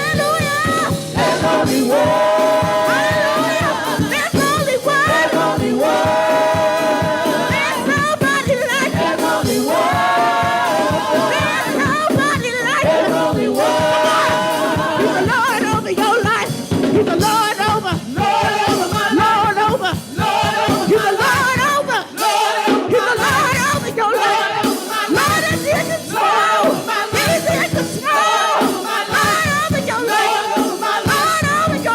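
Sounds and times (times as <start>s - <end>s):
group singing gospel song: 0.0s - 31.9s
steady beat: 0.0s - 31.9s.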